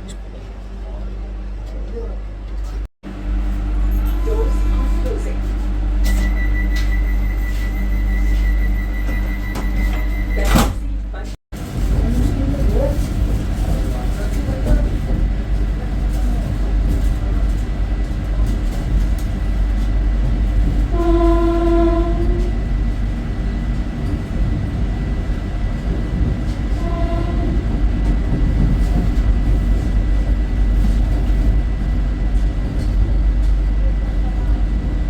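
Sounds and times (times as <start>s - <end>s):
train rumbling: 0.0s - 35.0s
train horn blast: 20.9s - 22.6s, 26.7s - 27.6s.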